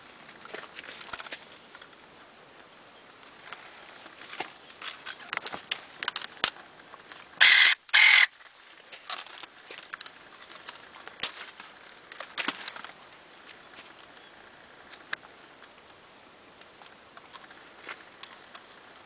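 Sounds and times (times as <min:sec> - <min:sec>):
stems rustling: 0:00.0 - 0:19.0
pruning shears motor whirs: 0:07.4 - 0:08.3.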